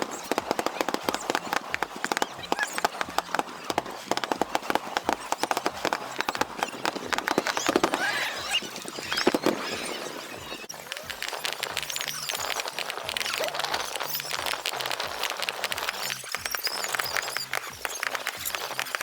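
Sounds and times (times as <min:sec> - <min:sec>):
fireworks crackling pops: 0:00.0 - 0:19.0.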